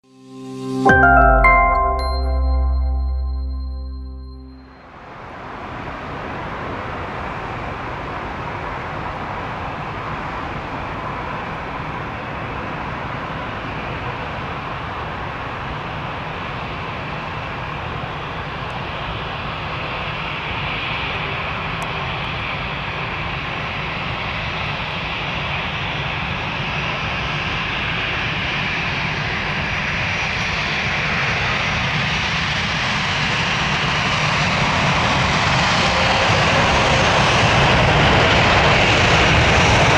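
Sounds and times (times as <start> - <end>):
jet engines rushing drone: 34.4 - 39.9.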